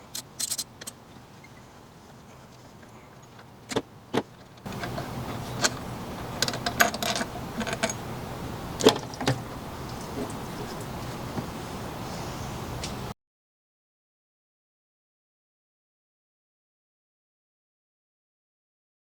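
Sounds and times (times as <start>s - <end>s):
metallic clicks and clinks of tools: 0.0s - 0.9s
background hiss: 0.0s - 13.1s.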